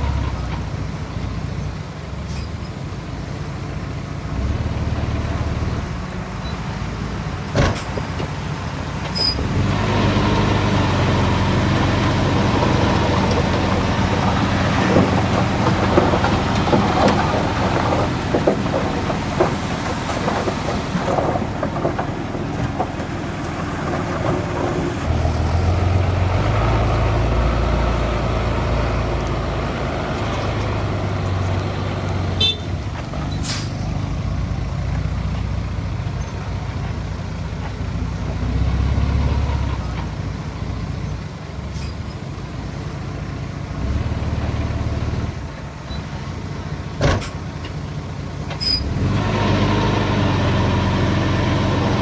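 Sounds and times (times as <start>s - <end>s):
deep engine rumble: 0.0s - 52.0s
heavy diesel machinery engines: 0.0s - 52.0s
metal clanks and rattles: 12.4s - 25.2s.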